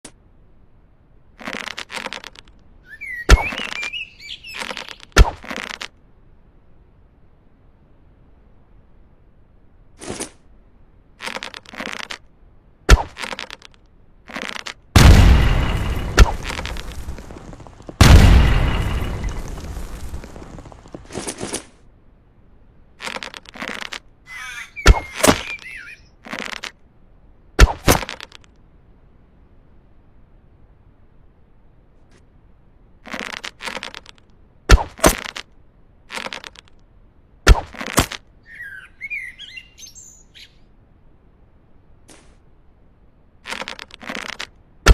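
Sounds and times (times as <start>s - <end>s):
rustling handling noise: 1.4s - 2.6s, 11.2s - 12.3s, 23.0s - 24.1s, 33.0s - 34.4s, 35.0s - 36.8s, 43.4s - 44.6s
wavering creak: 1.4s - 2.6s, 11.2s - 12.3s, 23.0s - 26.8s, 36.1s - 36.8s, 43.4s - 44.6s
booming effect: 15.0s - 20.9s.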